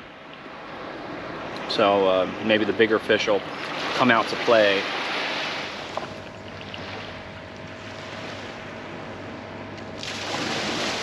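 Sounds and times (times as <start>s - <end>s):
faint steady hum: 0.0s - 11.0s
rushing water at shore: 0.0s - 11.0s
wind: 0.0s - 11.0s.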